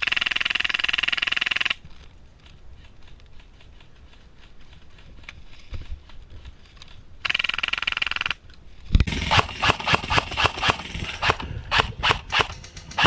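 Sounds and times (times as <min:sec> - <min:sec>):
airsoft gun rapid fire: 0:09.0 - 0:13.0.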